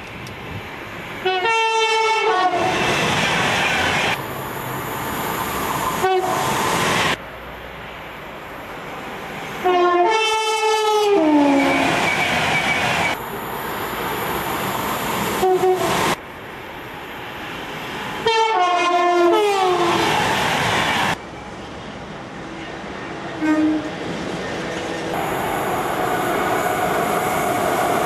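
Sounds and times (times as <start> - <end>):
train rumbling: 0.0 - 28.0
train horn blasts: 1.2 - 2.7, 6.0 - 6.4, 9.6 - 11.9, 15.4 - 15.9, 18.2 - 20.0, 23.4 - 24.0.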